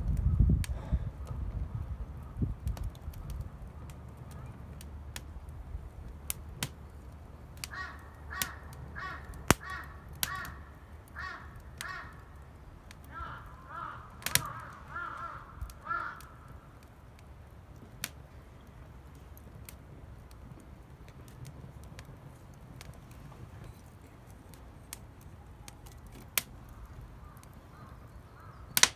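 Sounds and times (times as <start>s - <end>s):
campfire pops and cracks: 2.3s - 28.9s
crow cawing: 7.6s - 12.4s, 13.0s - 16.7s, 26.7s - 28.9s.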